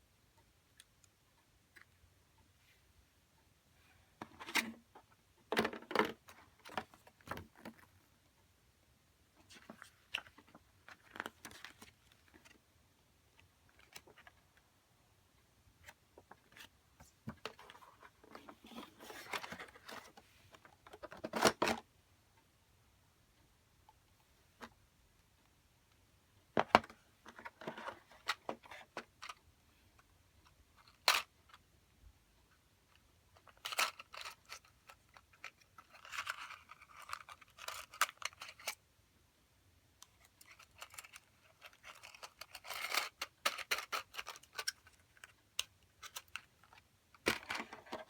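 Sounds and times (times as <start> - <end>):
plastic parts clicking: 40.0 - 48.0.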